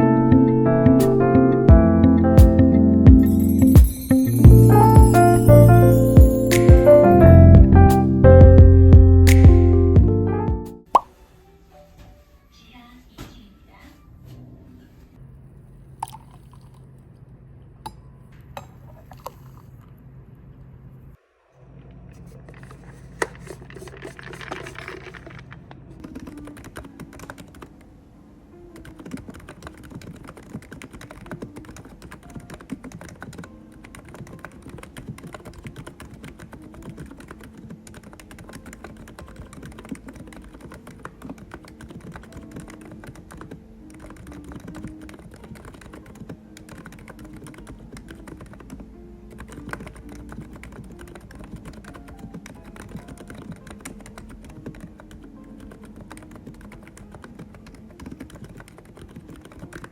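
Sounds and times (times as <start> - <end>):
rapid keyboard typing: 1.7 - 7.7, 22.2 - 27.8, 28.7 - 59.9.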